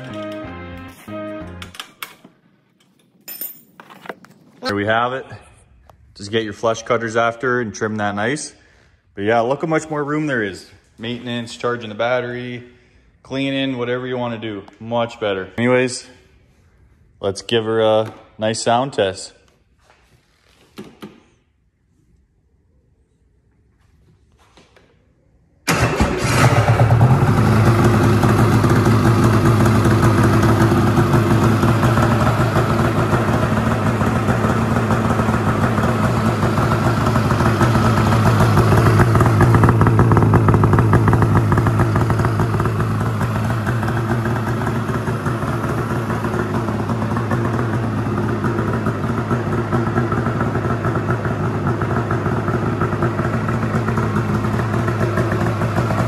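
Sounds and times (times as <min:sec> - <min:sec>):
snowmobile engine running: 0:26.4 - 0:56.0.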